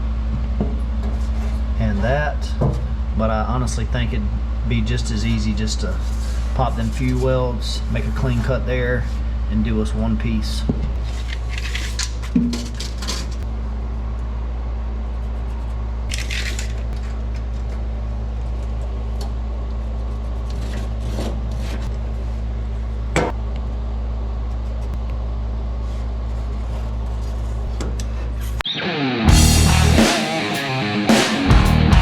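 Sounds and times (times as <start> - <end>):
low machine hum: 0.0 - 28.6, 29.3 - 32.0
metal parts clinking: 16.1 - 16.9.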